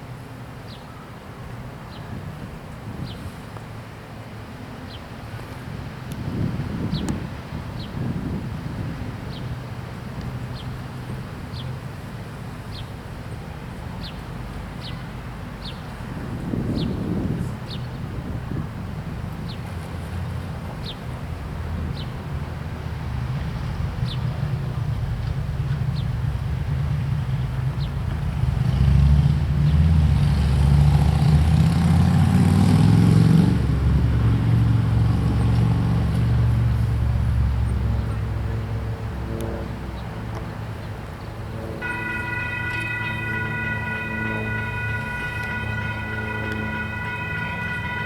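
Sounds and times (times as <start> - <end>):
road traffic rumble: 0.0 - 48.0
locomotive air horn: 41.6 - 48.0.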